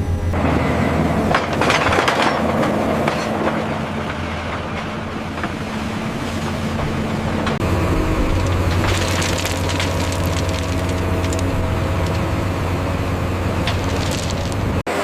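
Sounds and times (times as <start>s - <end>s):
rail vehicle rumbling on track: 0.0s - 15.0s
metallic clatter: 7.5s - 12.4s, 13.5s - 14.8s.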